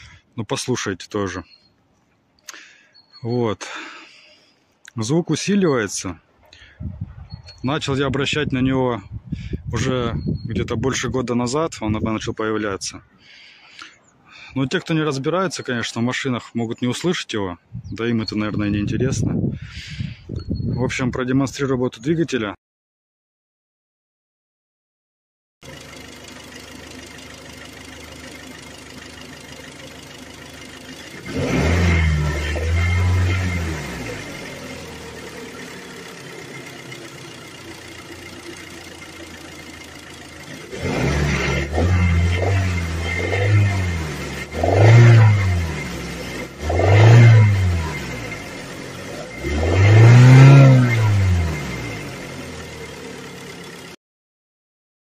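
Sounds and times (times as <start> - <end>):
engine knocking: 25.6 - 31.2, 34.4 - 41.1
car engine idling and revving: 25.6 - 54.0.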